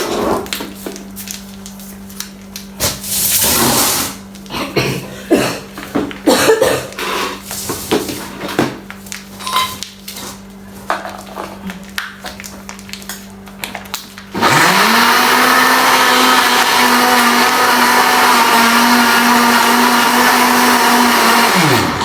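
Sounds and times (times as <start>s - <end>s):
kitchen utensils clattering: 9.4s - 10.4s.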